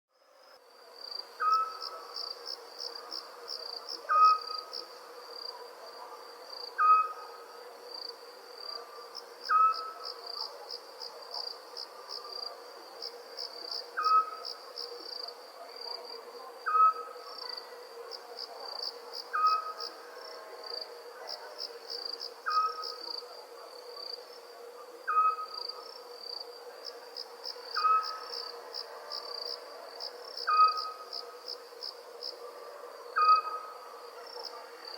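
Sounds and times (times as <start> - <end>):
crickets chirping: 0.2 - 34.9
night animal calling: 6.8 - 7.3, 9.5 - 10.0, 25.0 - 25.7, 27.7 - 28.4, 30.4 - 31.1, 32.3 - 34.8.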